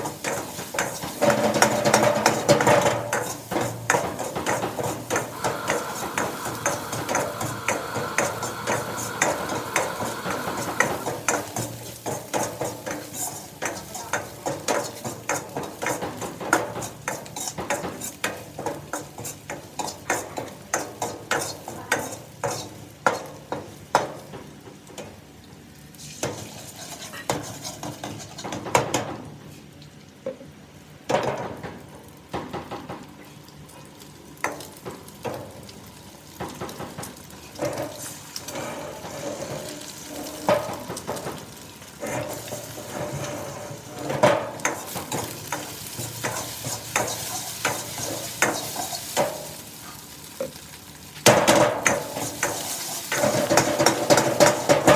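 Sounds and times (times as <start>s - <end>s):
food sizzling: 0.0s - 23.8s, 33.6s - 54.9s
metal spatula scraping a wok: 26.0s - 28.5s, 37.9s - 40.4s, 42.0s - 49.2s.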